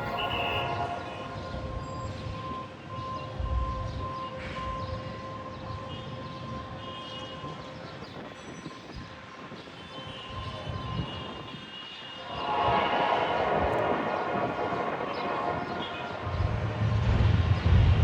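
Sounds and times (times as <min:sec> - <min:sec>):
train rumbling with whine: 0:00.0 - 0:06.8, 0:12.2 - 0:18.0.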